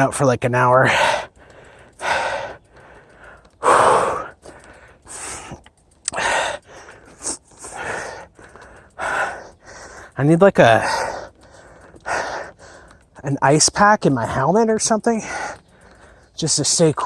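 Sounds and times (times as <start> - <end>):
man breathing hard: 0.8 - 13.2, 15.2 - 16.4.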